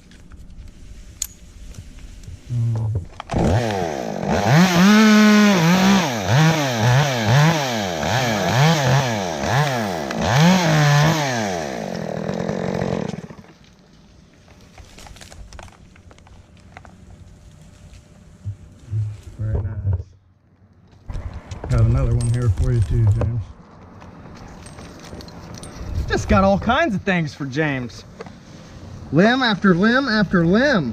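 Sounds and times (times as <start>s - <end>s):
chainsaw revving: 3.2s - 13.6s.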